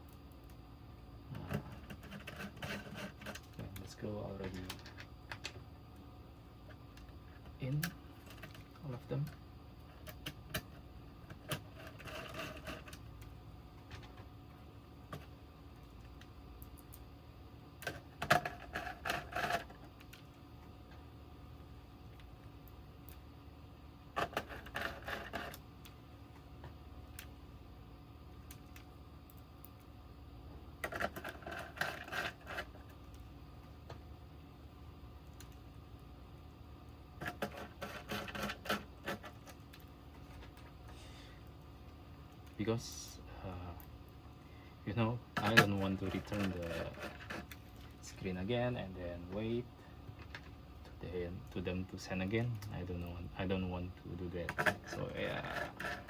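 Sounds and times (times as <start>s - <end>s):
faint steady hum: 0.0s - 56.0s
small parts clicking and rattling: 17.8s - 20.7s, 30.8s - 33.3s.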